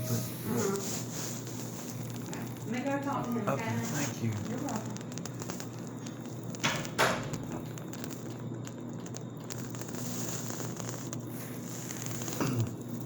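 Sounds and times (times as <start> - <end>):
faint crackle: 0.0 - 13.0
low room hum: 0.0 - 13.0
person coughing: 12.4 - 12.8.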